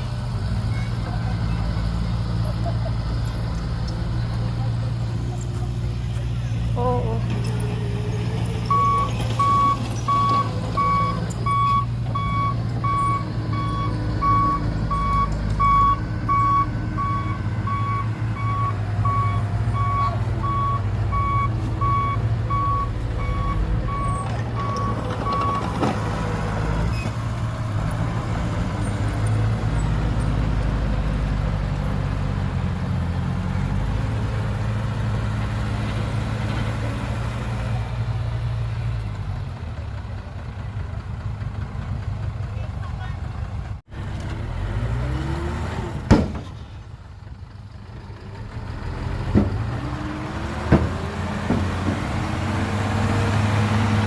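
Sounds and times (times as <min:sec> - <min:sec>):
heavy diesel engines running: 0:00.0 - 0:54.0
reversing alarm beeping: 0:08.7 - 0:25.7.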